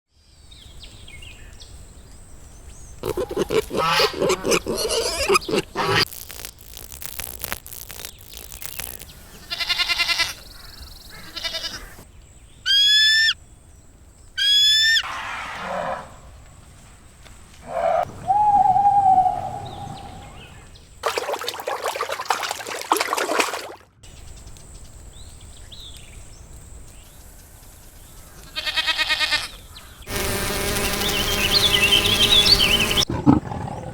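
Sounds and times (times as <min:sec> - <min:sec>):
noisy burst: 0:03.0 - 0:09.4, 0:30.1 - 0:33.1
held animal tone: 0:03.0 - 0:10.4
high sweeping cries: 0:03.0 - 0:10.4, 0:17.7 - 0:20.4, 0:30.1 - 0:33.1
animal calls: 0:03.0 - 0:12.0, 0:12.7 - 0:13.4, 0:17.6 - 0:20.6.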